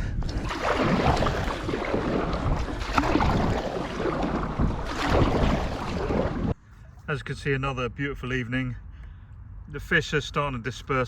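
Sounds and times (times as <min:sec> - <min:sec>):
sea washing around kayak: 0:00.0 - 0:06.6
wind buffeting microphone: 0:00.0 - 0:06.6.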